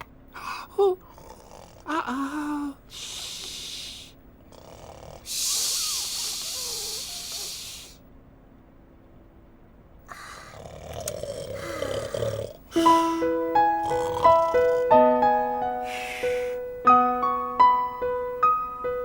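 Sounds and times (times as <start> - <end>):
character snoring: 1.0 - 8.0, 10.1 - 15.1, 15.9 - 16.6
bright keyboard tune: 16.8 - 19.0.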